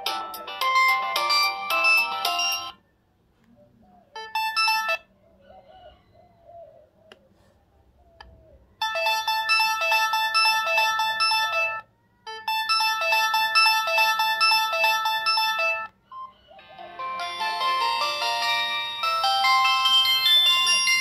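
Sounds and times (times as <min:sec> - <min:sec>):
mobile phone ringtones: 0:00.0 - 0:02.8, 0:04.2 - 0:05.1, 0:08.8 - 0:21.0.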